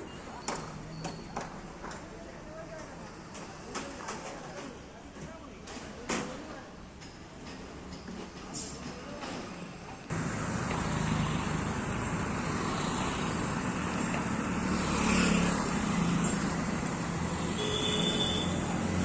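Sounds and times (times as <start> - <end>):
vehicle engine and traffic noise: 10.0 - 19.0.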